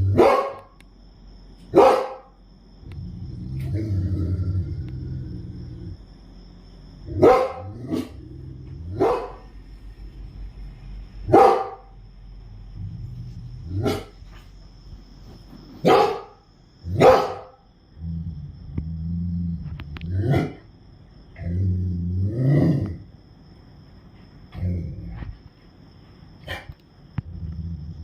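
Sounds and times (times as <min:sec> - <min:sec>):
dog barking deeply: 0:00.0 - 0:00.8, 0:01.7 - 0:02.4, 0:07.1 - 0:09.5, 0:11.2 - 0:12.0, 0:13.7 - 0:14.2, 0:15.8 - 0:17.6.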